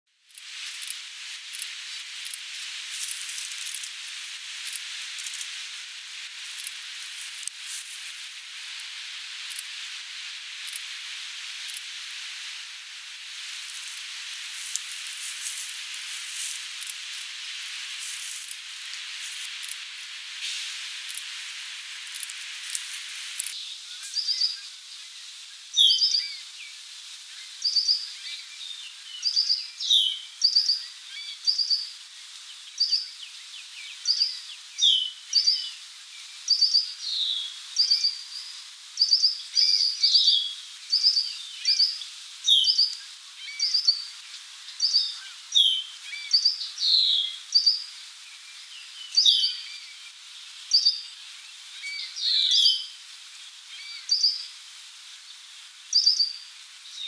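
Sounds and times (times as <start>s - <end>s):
steady background hiss: 0.1s - 57.0s
songbirds chip notes: 22.2s - 25.1s, 27.4s - 53.0s, 53.7s - 54.6s, 55.9s - 57.0s.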